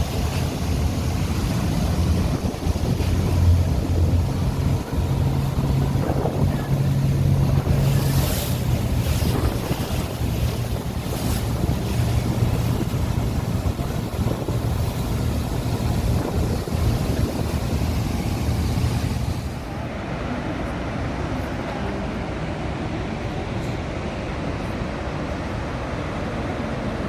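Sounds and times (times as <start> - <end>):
wind buffeting microphone: 0.0 - 19.6
low engine drone: 0.0 - 27.0
waterfall roaring: 0.0 - 27.0.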